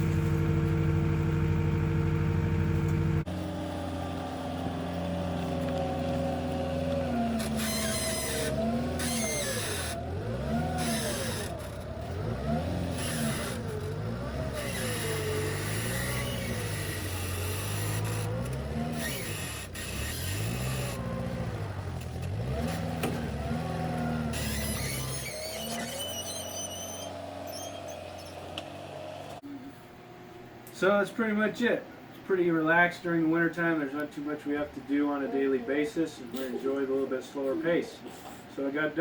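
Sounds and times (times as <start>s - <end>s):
skid steer engine running: 0.0s - 29.4s.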